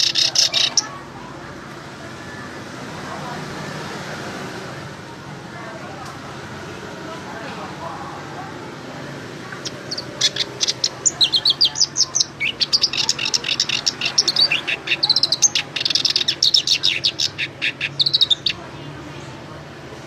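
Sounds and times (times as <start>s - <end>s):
songbird singing: 0.0s - 1.1s, 9.3s - 19.4s.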